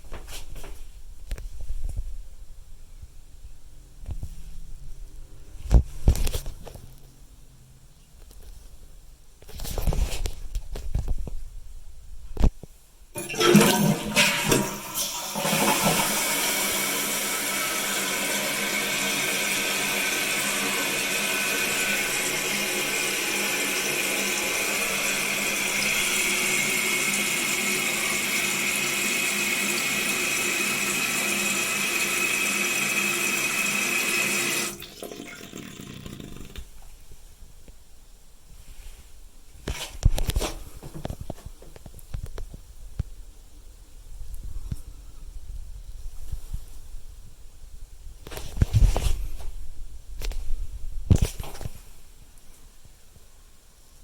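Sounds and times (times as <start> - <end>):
toilet flushing water rush: 13.2 - 36.6
toilet tank refilling hiss: 13.2 - 36.7.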